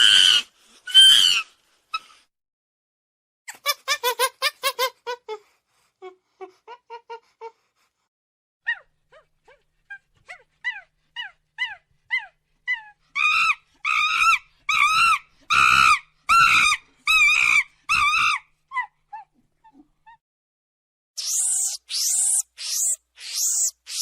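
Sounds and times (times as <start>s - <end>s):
monkey calling: 21.2s - 24.0s.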